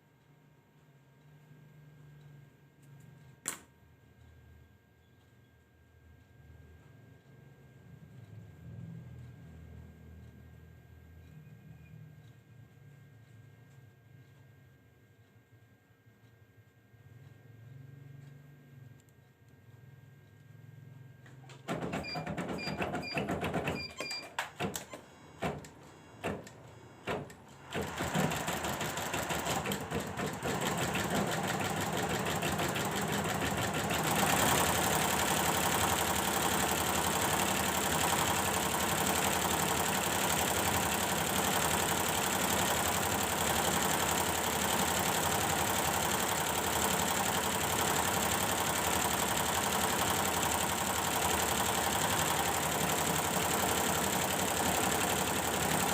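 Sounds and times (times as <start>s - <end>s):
embroidery machine stitching: 21.6s - 55.9s
machine beeps: 21.9s - 24.4s.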